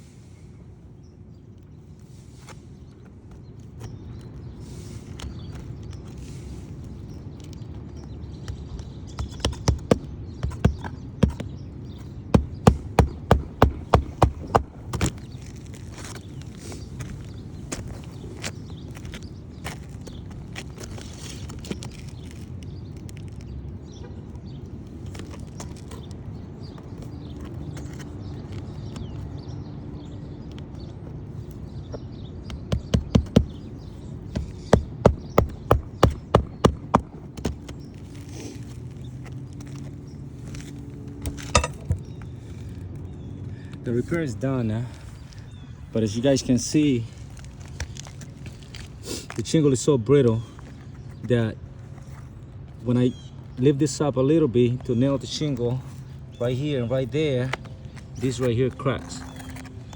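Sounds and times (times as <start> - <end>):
low background rumble: 6.3 - 20.0, 31.1 - 49.0
hammer driving nails into shingles: 9.2 - 15.2, 32.5 - 33.7, 34.3 - 37.8, 41.2 - 42.0.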